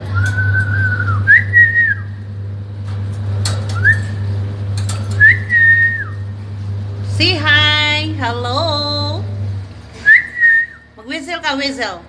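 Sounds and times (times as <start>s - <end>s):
steady low hum: 0.0s - 12.0s
parrot whistling: 10.0s - 10.9s.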